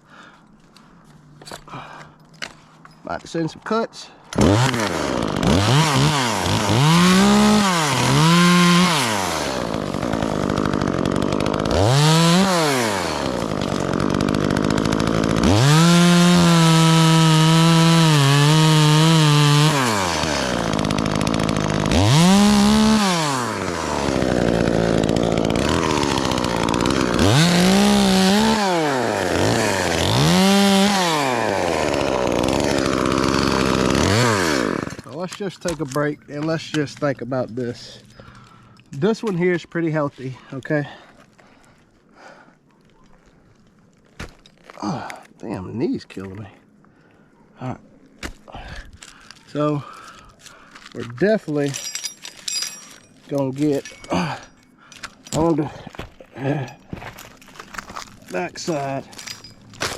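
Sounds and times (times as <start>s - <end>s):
chainsaw revving and idling: 4.3s - 35.8s, 58.0s - 59.9s.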